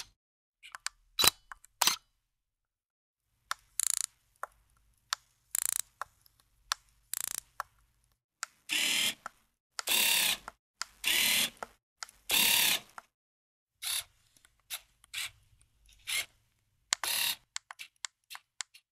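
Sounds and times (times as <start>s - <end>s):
camera mechanical clicks: 3.8s - 4.1s, 5.6s - 5.8s, 7.1s - 7.4s
lens autofocus motor whirring: 9.9s - 10.4s, 11.0s - 11.5s.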